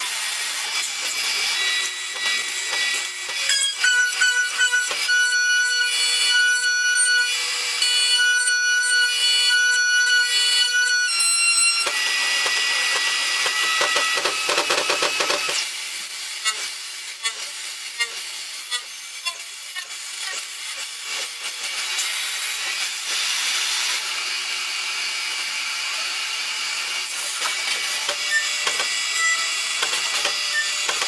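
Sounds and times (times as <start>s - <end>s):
machine whining: 0.0s - 15.6s, 25.6s - 31.0s
rapid machine chattering: 11.9s - 15.6s, 29.7s - 31.0s.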